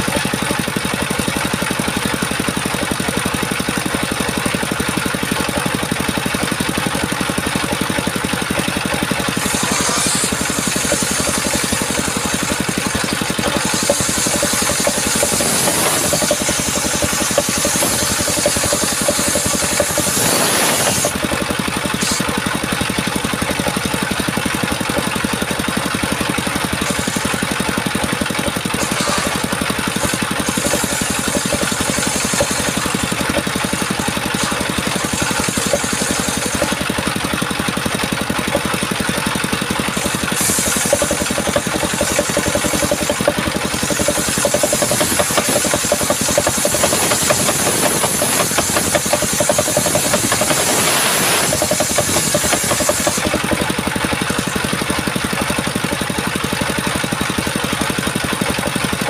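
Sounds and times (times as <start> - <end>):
small engine running: 0.0 - 59.0
harsh hissing: 13.6 - 21.1, 40.2 - 53.2.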